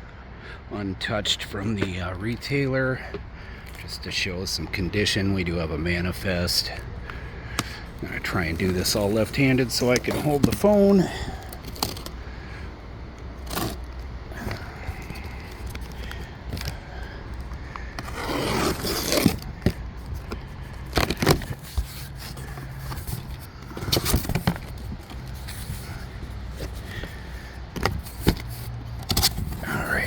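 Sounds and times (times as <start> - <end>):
cardboard and tape scraping: 7.6 - 12.2, 13.4 - 29.9.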